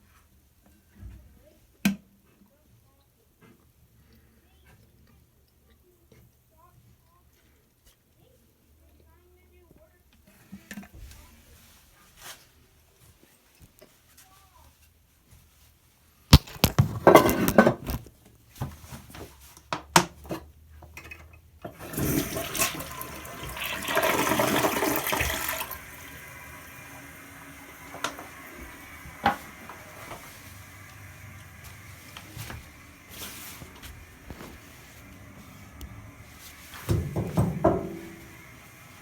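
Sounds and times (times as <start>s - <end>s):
toilet flushing: 21.6s - 39.0s
toilet tank refilling hiss: 21.6s - 39.0s
knocks: 36.9s - 38.3s.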